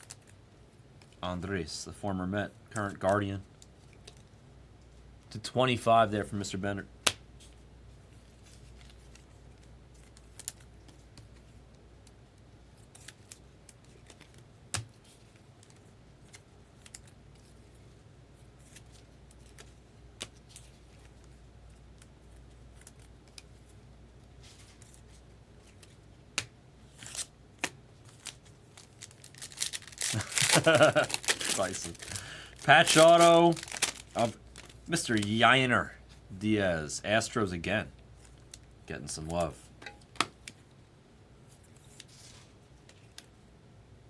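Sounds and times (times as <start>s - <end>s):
low steady hum: 0.0s - 44.0s
card packs rustling: 28.0s - 35.9s.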